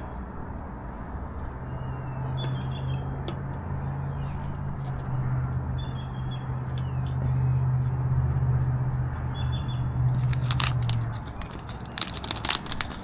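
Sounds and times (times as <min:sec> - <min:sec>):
low engine hum: 0:00.0 - 0:13.0
clicking rustling handling noise: 0:10.2 - 0:13.0.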